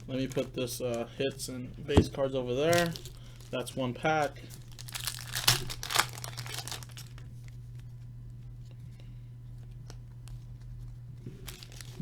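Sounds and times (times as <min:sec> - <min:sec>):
card pack wrapper crinkling and tearing: 0:00.0 - 0:00.6, 0:02.6 - 0:07.3, 0:11.3 - 0:12.0.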